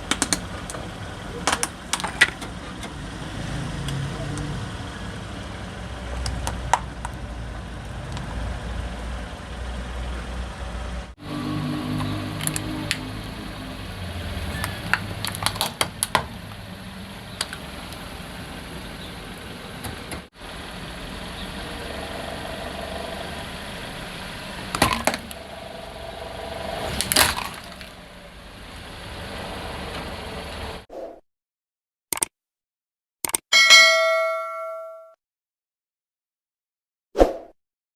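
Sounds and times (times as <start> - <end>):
tyres crushing plastic: 0.0 - 2.5, 14.4 - 16.5, 24.5 - 28.2
car running: 0.0 - 30.9.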